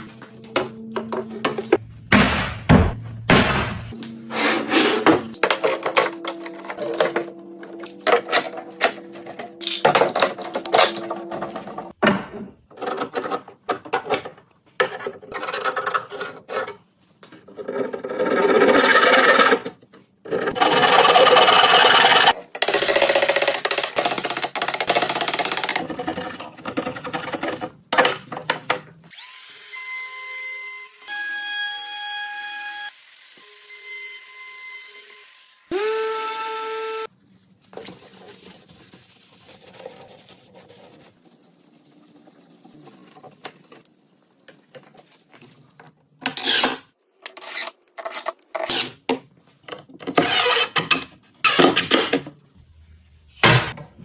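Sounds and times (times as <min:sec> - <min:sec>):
tools rasping and sanding wood: 0:04.2 - 0:05.4.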